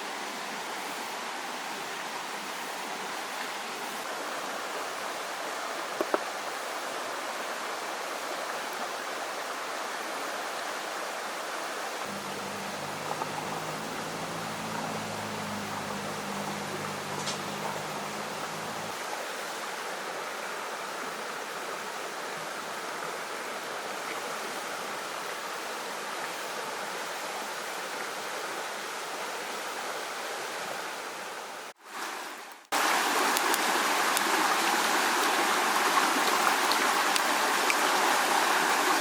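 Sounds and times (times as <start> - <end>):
stream water rushing: 0.0 - 39.0.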